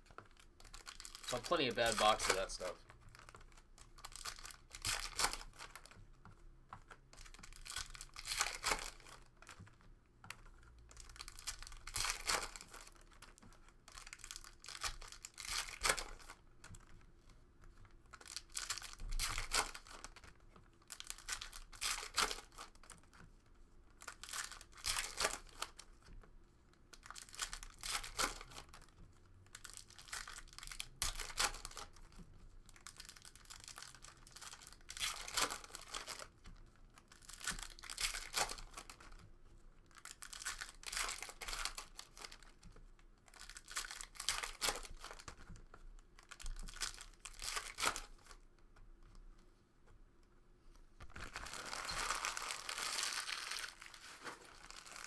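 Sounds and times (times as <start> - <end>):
wrappers crinkling: 0.1 - 6.0, 7.1 - 9.6, 10.5 - 17.0, 17.7 - 23.3, 23.9 - 25.9, 26.9 - 39.2, 39.9 - 42.7, 43.3 - 45.6, 46.2 - 48.4, 51.0 - 55.0
card packs being torn open: 0.4 - 5.8, 7.2 - 9.2, 11.0 - 13.1, 13.9 - 16.3, 18.1 - 22.9, 24.0 - 25.8, 27.0 - 28.6, 29.6 - 31.9, 32.9 - 36.3, 37.2 - 38.9, 43.4 - 45.2, 46.2 - 48.3, 51.0 - 55.0
cards being handled: 0.8 - 2.8, 51.0 - 55.0.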